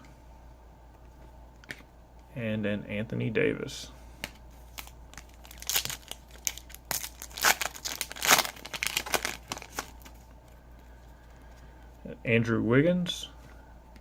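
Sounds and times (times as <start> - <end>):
wrapper crinkling and tearing: 4.7 - 10.2.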